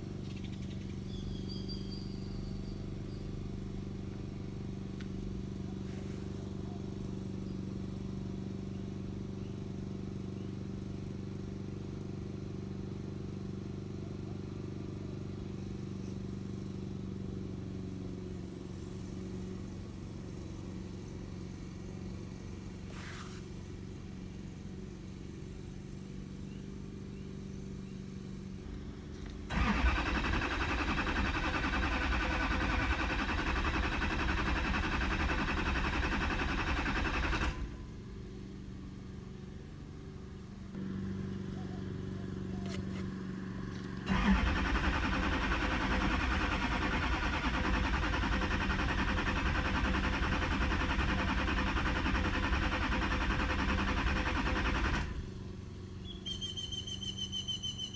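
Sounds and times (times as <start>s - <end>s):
engine cranking without starting: 29.2s - 37.8s, 43.9s - 55.4s.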